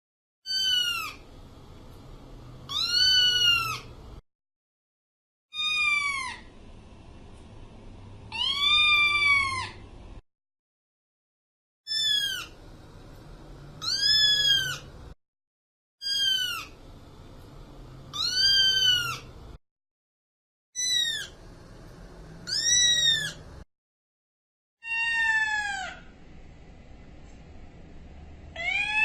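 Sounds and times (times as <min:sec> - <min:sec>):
kitten meowing: 0:00.5 - 0:01.2, 0:02.7 - 0:03.9, 0:05.5 - 0:06.4, 0:08.3 - 0:09.8, 0:11.9 - 0:12.5, 0:13.8 - 0:14.9, 0:16.0 - 0:16.7, 0:18.1 - 0:19.3, 0:20.8 - 0:21.3, 0:22.4 - 0:23.4, 0:24.8 - 0:26.0, 0:28.6 - 0:29.0.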